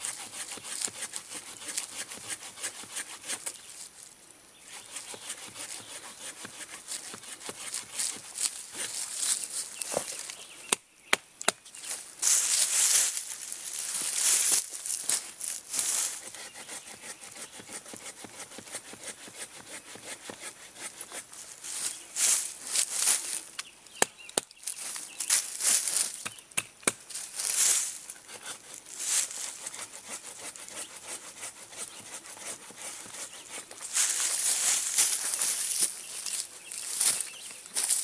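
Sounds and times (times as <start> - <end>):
hand saw sawing wood: 0.0 - 3.6, 4.7 - 9.2, 15.1 - 21.9, 28.0 - 37.3.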